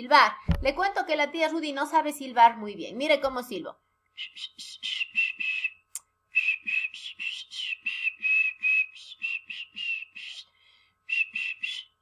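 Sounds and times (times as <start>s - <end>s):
woman whistling short notes: 4.2s - 5.8s, 6.4s - 10.5s, 11.1s - 12.0s.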